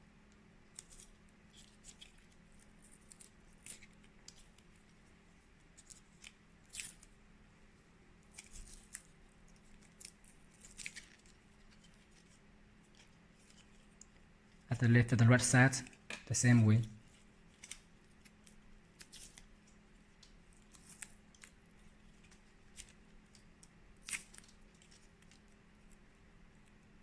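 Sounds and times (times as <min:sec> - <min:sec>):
adhesive tape crinkling: 0:00.7 - 0:04.9, 0:05.8 - 0:07.1, 0:08.3 - 0:14.2, 0:17.0 - 0:25.6
steady low hum: 0:14.1 - 0:17.4.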